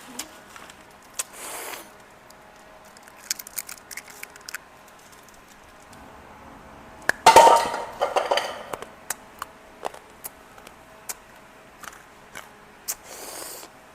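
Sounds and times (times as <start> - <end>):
candy crunching: 2.8 - 5.7.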